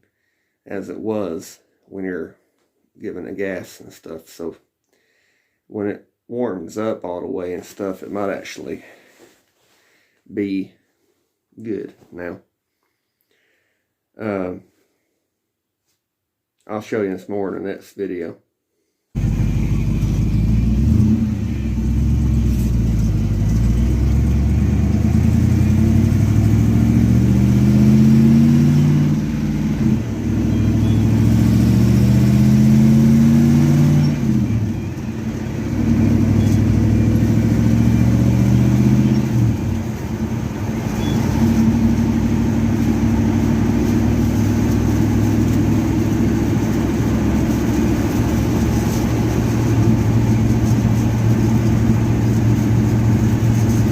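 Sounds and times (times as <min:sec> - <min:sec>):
car engine revving: 0:19.2 - 0:53.9.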